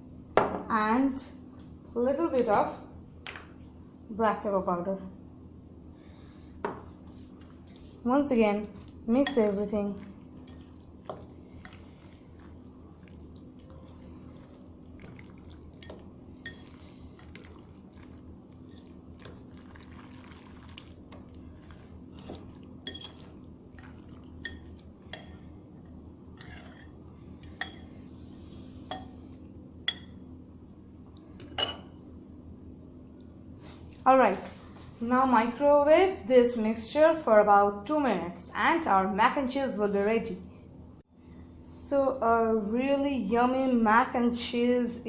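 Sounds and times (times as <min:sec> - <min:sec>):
steady low hum: 0:00.0 - 0:45.0
soft squelching of food: 0:08.6 - 0:29.3
spoon clinking against bowl: 0:26.4 - 0:27.9, 0:29.9 - 0:30.2.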